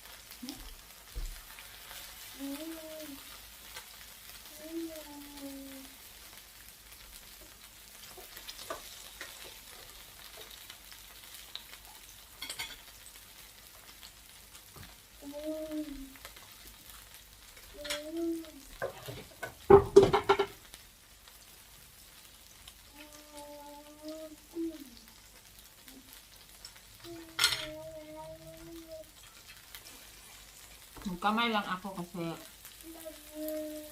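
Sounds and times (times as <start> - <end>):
food sizzling on grill: 0.0 - 33.9.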